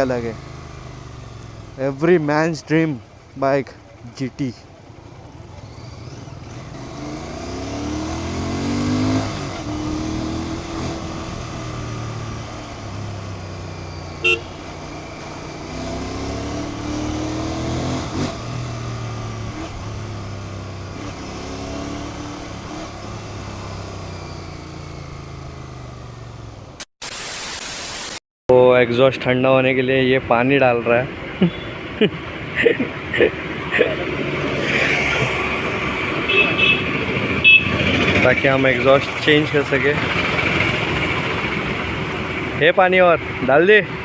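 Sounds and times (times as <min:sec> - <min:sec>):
motorcycle engine accelerating: 0:00.0 - 0:26.9, 0:31.4 - 0:44.0
horn beep: 0:13.8 - 0:15.3, 0:36.2 - 0:37.9.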